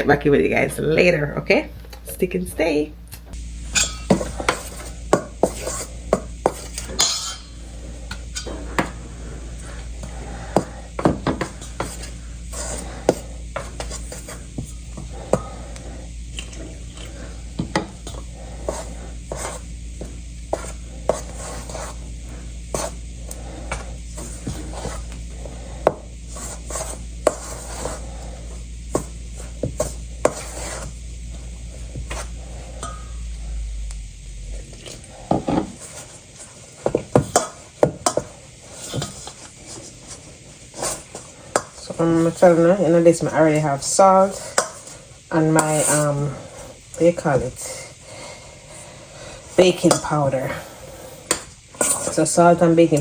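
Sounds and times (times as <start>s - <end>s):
steady low hum: 0.0s - 53.0s
dishes and utensils clattering: 6.5s - 7.6s.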